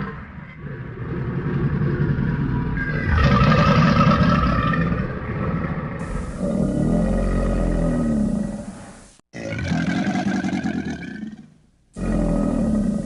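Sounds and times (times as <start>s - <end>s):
crocodile bellowing: 2.8s - 8.8s, 9.4s - 13.0s.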